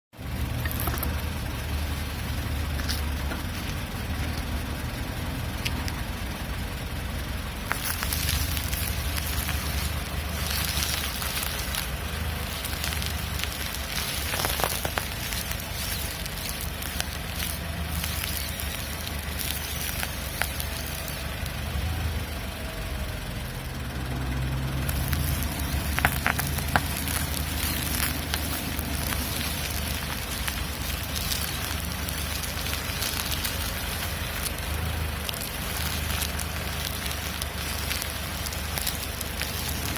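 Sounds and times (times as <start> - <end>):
car engine idling: 0.1 - 39.9.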